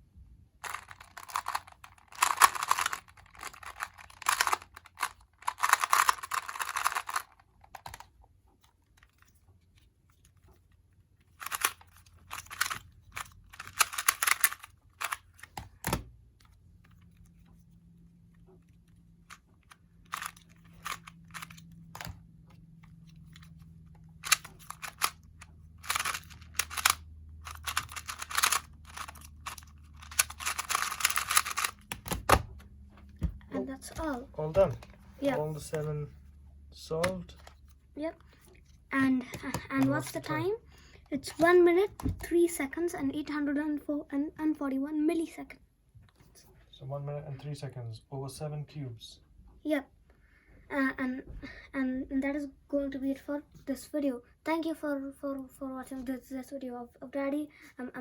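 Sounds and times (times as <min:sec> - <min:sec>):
puzzle cubes clicking and rattling: 0:00.6 - 0:08.1, 0:11.3 - 0:16.0, 0:19.3 - 0:22.2, 0:23.2 - 0:32.4.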